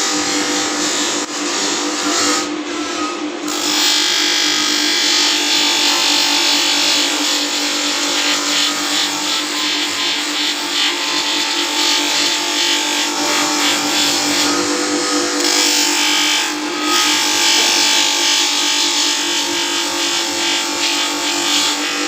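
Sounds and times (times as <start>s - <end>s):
machine tool hum: 0.0s - 22.0s.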